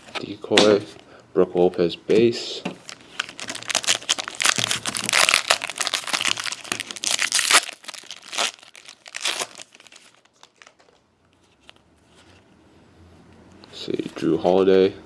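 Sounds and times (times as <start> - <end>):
wrapper crinkling: 2.8 - 11.0.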